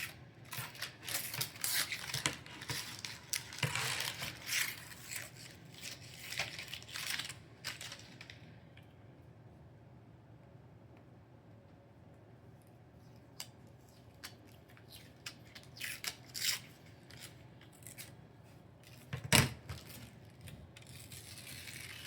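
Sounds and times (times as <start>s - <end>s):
paper ripping: 0.0s - 8.4s, 20.8s - 22.0s.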